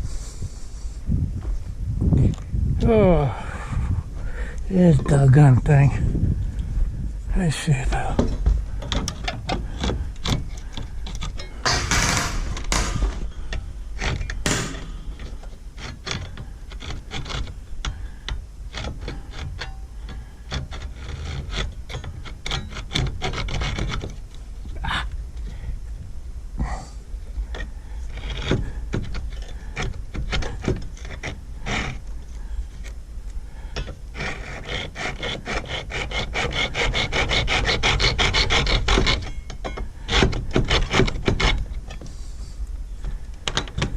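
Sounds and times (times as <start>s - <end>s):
hand tool scraping wood: 7.7s - 24.8s, 27.3s - 33.0s, 33.6s - 43.9s.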